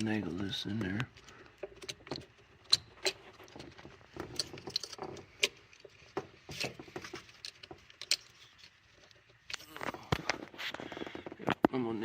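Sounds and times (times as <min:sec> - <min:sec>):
ignition coil clicking and knocking: 0:00.7 - 0:09.6.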